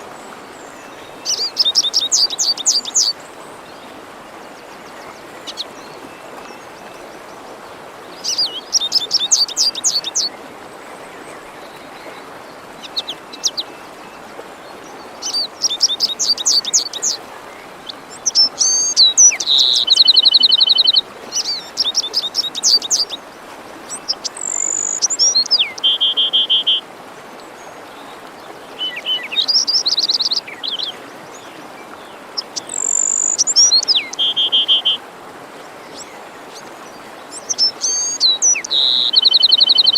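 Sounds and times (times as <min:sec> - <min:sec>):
forest stream rushing: 0:00.0 - 0:39.9
songbirds singing trills: 0:00.6 - 0:03.9, 0:08.1 - 0:10.4, 0:14.8 - 0:26.8, 0:27.6 - 0:35.0, 0:35.8 - 0:39.9.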